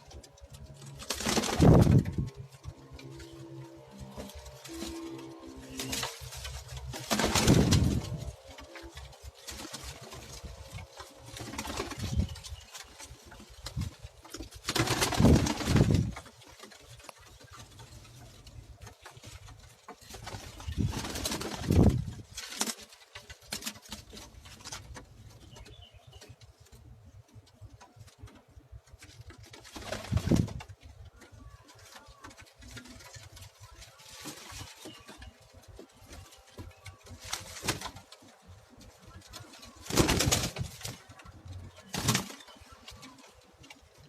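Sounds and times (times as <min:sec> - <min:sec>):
pigeons cooing: 0:00.0 - 0:19.0.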